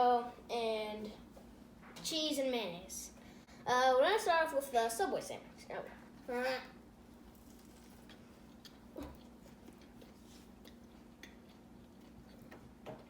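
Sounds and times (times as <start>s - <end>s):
low steady hum: 0.0s - 13.0s
chewing mouth clicks: 7.4s - 12.6s.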